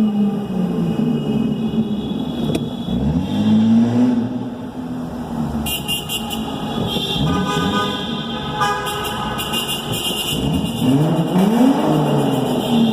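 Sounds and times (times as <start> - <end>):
car horns: 1.0 - 3.7, 5.6 - 12.9
car engine revving: 2.9 - 5.6, 10.2 - 12.9.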